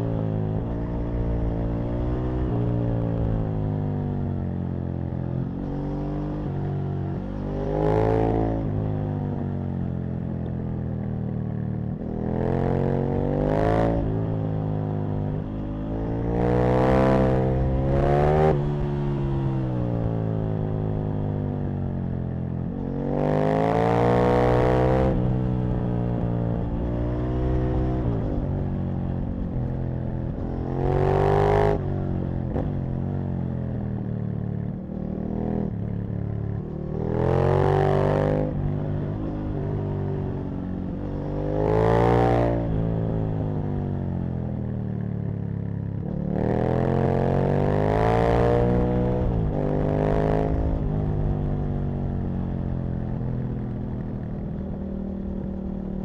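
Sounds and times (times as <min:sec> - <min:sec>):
motorcycle engine revving: 0:22.4 - 0:56.0.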